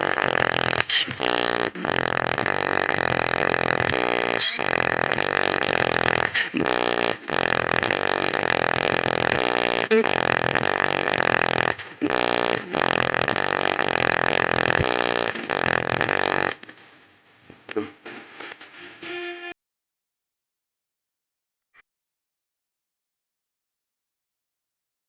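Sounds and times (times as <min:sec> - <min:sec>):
damaged loudspeaker rattling buzz: 0:00.0 - 0:16.6.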